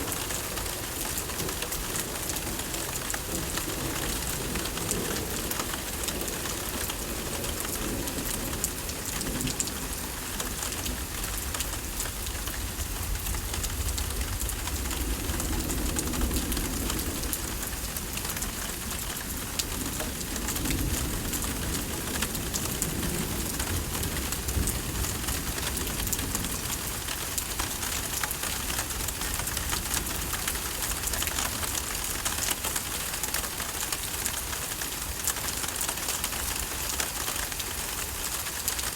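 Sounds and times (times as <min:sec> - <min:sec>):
rain pattering on surfaces: 0:00.0 - 0:38.9
low thunder rumble: 0:12.6 - 0:27.7.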